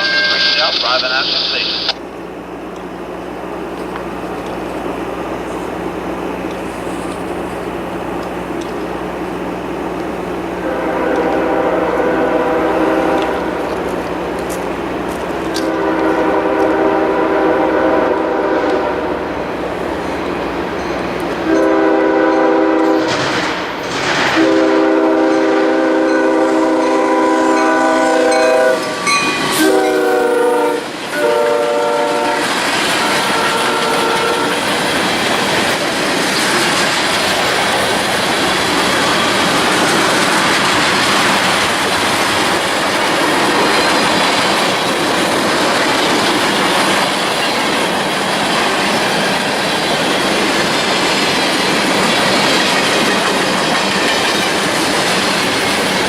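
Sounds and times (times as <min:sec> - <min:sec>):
train wheels clattering on rail: 0:03.6 - 0:56.0
locomotive air horn chord: 0:10.6 - 0:13.6, 0:15.6 - 0:19.2, 0:21.4 - 0:23.2, 0:24.4 - 0:34.6.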